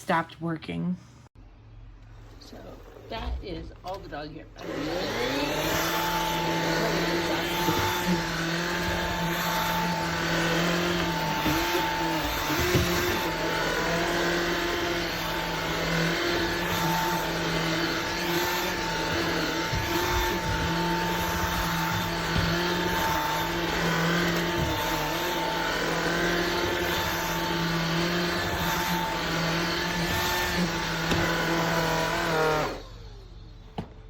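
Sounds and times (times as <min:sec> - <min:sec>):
vacuum cleaner motor whining: 0:02.4 - 0:34.0.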